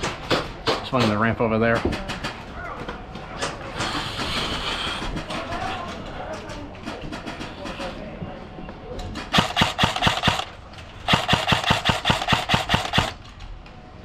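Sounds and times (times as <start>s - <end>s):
airsoft rifle full-auto bursts: 9.3s - 13.2s.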